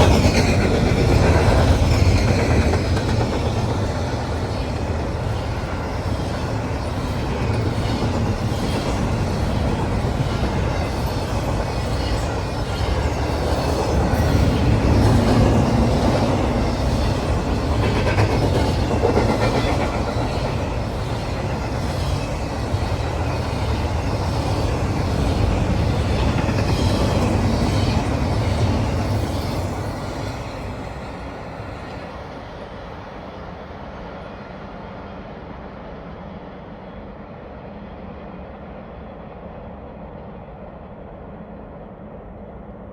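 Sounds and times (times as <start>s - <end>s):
freight train wheels clacking: 0.0s - 32.4s
faint steady train rumble: 0.0s - 42.9s.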